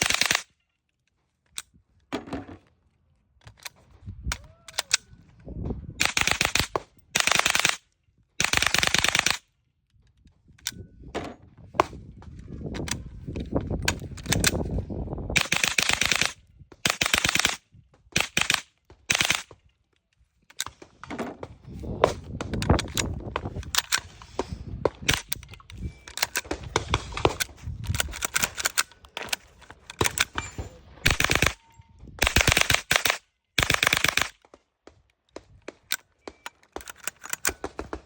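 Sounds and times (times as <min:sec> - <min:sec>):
rifle shots: 0:00.0 - 0:00.5, 0:06.0 - 0:07.8, 0:08.4 - 0:09.4, 0:15.4 - 0:17.6, 0:18.2 - 0:19.5, 0:26.0 - 0:31.6, 0:32.2 - 0:34.5.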